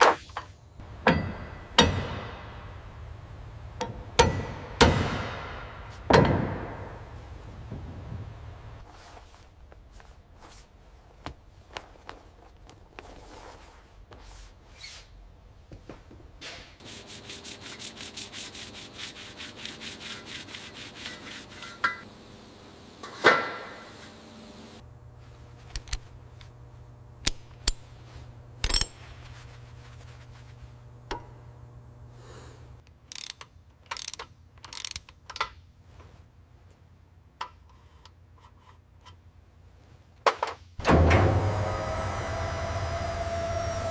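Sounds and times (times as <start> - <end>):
low steady hum: 0.2 - 13.8, 24.0 - 32.9
sanding scraping on parts: 16.8 - 22.1.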